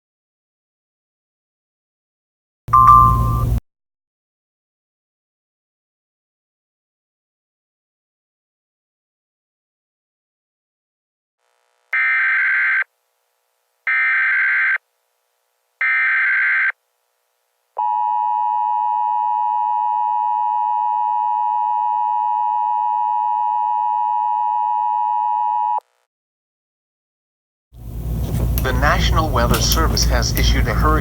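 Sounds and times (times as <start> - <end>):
long steady attention tone: 2.7 - 3.6, 17.8 - 25.8, 27.8 - 31.0.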